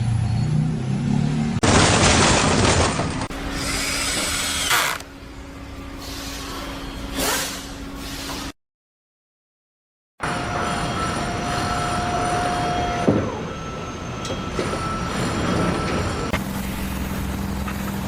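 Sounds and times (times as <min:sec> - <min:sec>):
high-pitched squeal: 0:10.2 - 0:17.2
faint machine whine: 0:10.2 - 0:18.0
heavy machinery rumble: 0:10.2 - 0:18.0.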